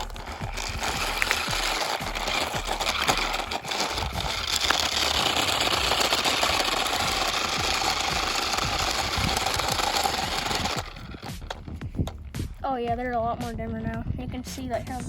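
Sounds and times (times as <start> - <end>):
toy car motor whirring: 0.0 - 12.2
wind buffeting microphone: 7.5 - 15.0.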